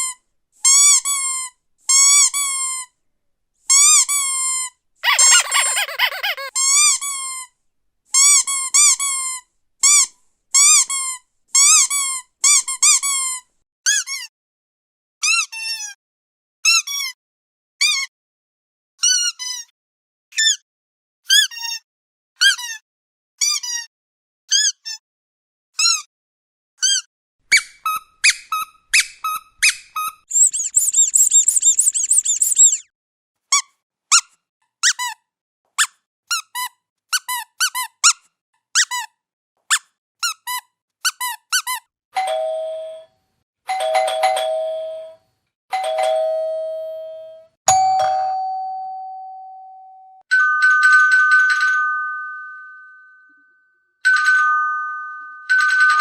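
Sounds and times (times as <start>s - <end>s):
short pitch-bending squeaks: 5.0s - 6.5s, 26.9s - 32.9s
fast high trill: 30.3s - 32.8s
doorbell ding-dong: 43.7s - 45.2s, 45.8s - 53.5s
chime with a knock: 47.7s - 52.5s.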